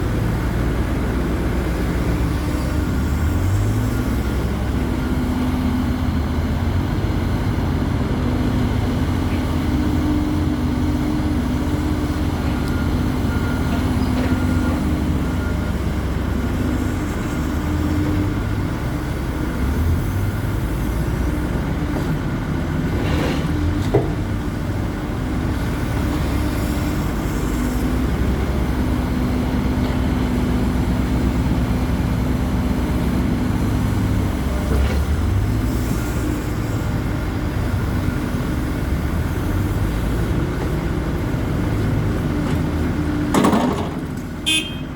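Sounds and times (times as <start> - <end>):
excavator engine and hydraulics: 0.0 - 44.9
knocks and clanks: 43.3 - 44.2.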